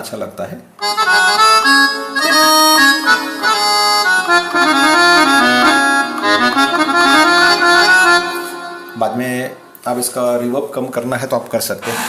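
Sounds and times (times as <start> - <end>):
synthesizer harmonium chords: 0.8 - 10.0.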